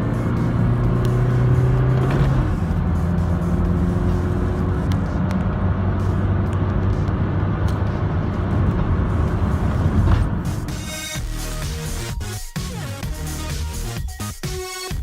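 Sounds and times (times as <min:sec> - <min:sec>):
road and wind noise: 0:00.0 - 0:11.4
diesel van engine running: 0:00.0 - 0:15.0.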